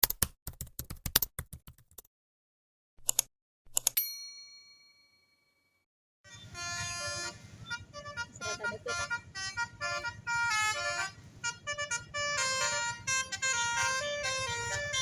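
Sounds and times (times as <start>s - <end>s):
rapid typing clicks: 0.0s - 2.0s
bell-like ding: 4.0s - 5.5s
engine rumble: 6.3s - 15.0s
multi-tone bus horn playing tune: 6.3s - 15.0s.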